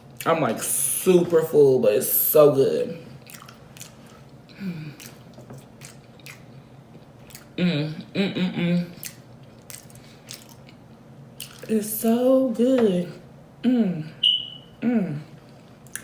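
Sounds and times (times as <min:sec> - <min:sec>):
close chewing and lip-smacking: 0:03.2 - 0:07.6, 0:09.0 - 0:10.8, 0:11.4 - 0:11.7, 0:15.4 - 0:16.0
short vocal sound: 0:07.6 - 0:09.0.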